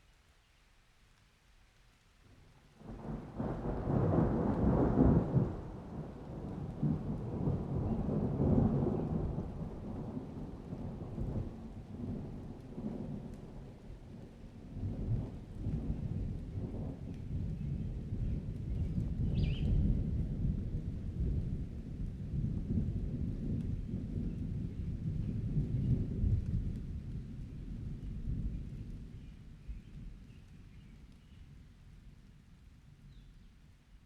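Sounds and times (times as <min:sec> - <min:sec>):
rolling thunder: 0:02.8 - 0:13.8, 0:14.7 - 0:29.1.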